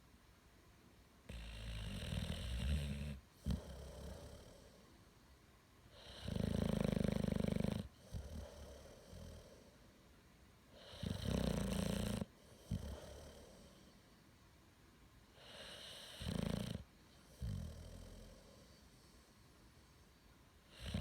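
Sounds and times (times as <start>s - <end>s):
heavy snoring: 1.3s - 4.8s, 6.0s - 9.7s, 10.8s - 13.8s, 15.4s - 18.8s, 20.7s - 21.0s.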